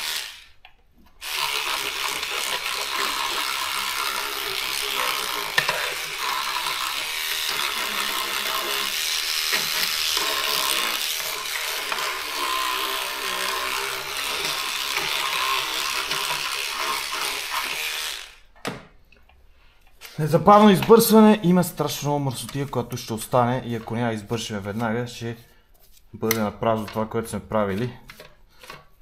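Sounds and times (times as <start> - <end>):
electric brush scrubbing plastic: 0.0 - 0.6, 1.2 - 18.5.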